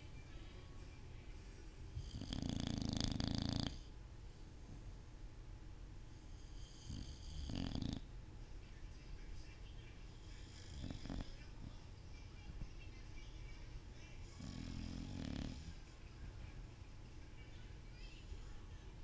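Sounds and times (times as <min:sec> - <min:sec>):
dog snoring: 0:02.0 - 0:03.9, 0:06.3 - 0:08.1, 0:10.2 - 0:11.4, 0:14.2 - 0:15.9.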